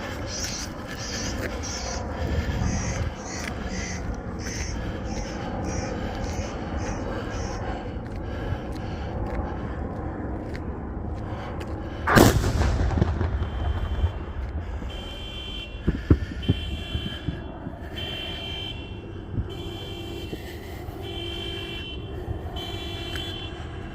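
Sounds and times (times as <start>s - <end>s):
sharp cracks: 12.0s - 15.3s
loud bang with rumbling echo: 12.0s - 17.3s.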